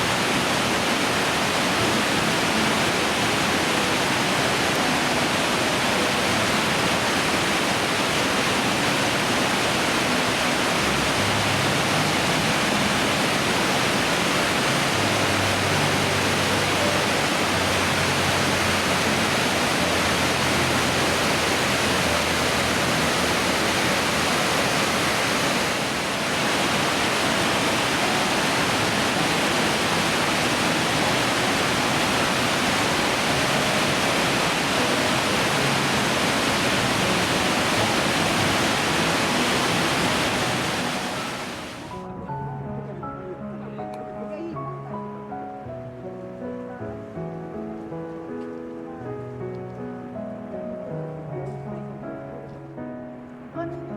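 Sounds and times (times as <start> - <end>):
waterfall roaring: 0.0 - 42.0.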